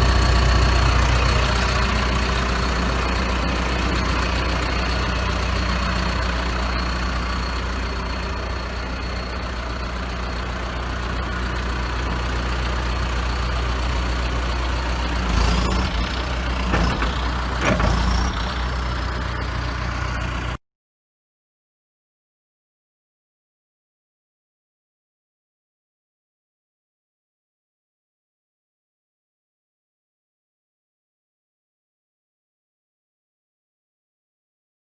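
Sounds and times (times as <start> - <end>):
diesel engine idling: 0.0 - 20.6
clunks and rattles: 15.2 - 19.8.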